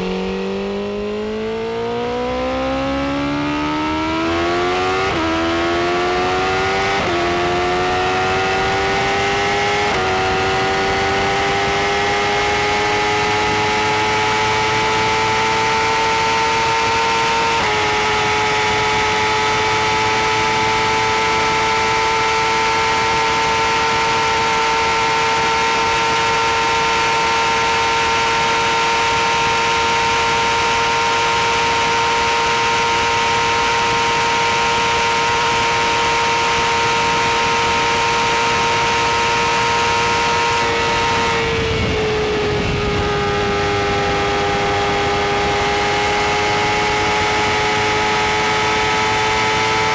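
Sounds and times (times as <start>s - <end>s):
motorcycle engine accelerating: 0.0s - 49.9s
wind rush: 40.4s - 48.7s.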